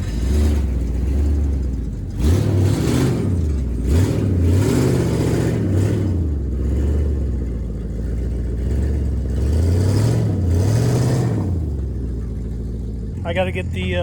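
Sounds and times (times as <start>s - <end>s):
truck engine revving: 0.0s - 14.0s.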